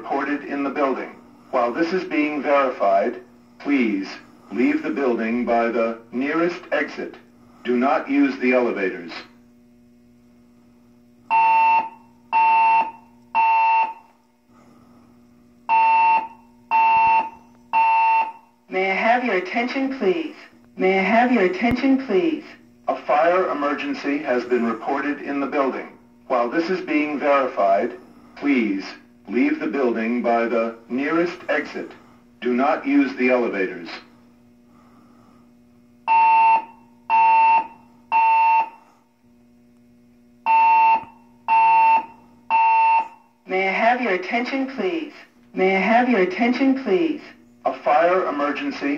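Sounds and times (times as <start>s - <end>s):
faint steady hum: 0.0s - 48.9s
fire alarm tones: 11.3s - 14.2s, 15.7s - 20.3s, 36.0s - 39.0s, 40.4s - 45.1s.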